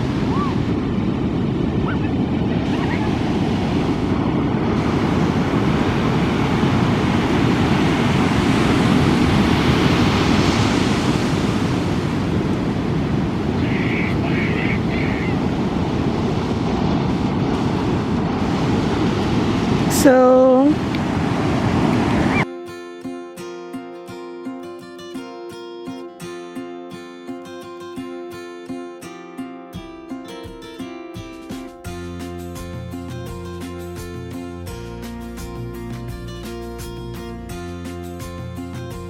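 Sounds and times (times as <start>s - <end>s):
wind buffeting microphone: 0.0s - 22.4s
ocean surf on shore: 0.0s - 22.5s, 29.1s - 39.0s.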